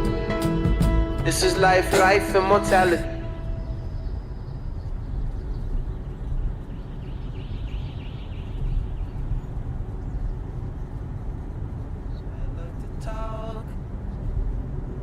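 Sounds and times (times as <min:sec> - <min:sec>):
car tyre and engine rumble: 0:03.1 - 0:15.0.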